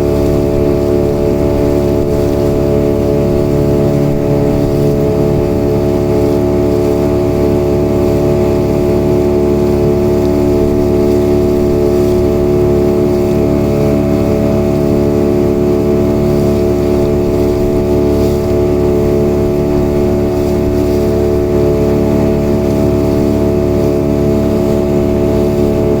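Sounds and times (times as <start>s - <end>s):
outboard motor running: 0.0s - 26.0s.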